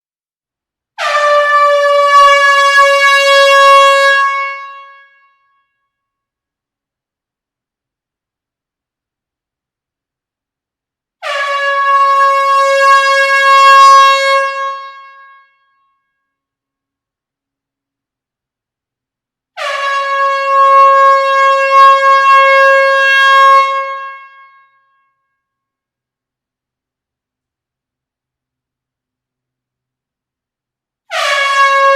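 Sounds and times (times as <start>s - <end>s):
air horn blast: 1.0s - 5.2s, 11.2s - 15.5s, 19.6s - 24.6s, 31.1s - 31.9s.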